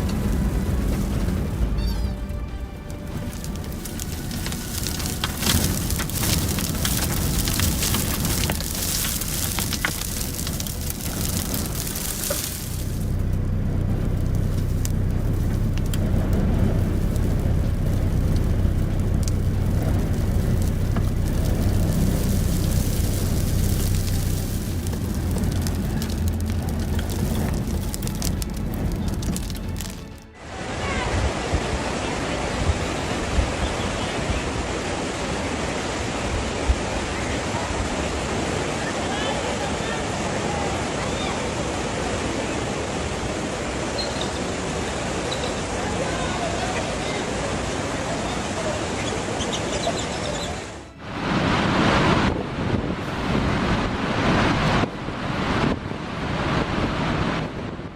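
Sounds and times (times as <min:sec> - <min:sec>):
loud rushing roar: 0:00.0 - 0:33.6
wind buffeting microphone: 0:00.0 - 0:38.9, 0:49.0 - 0:57.9.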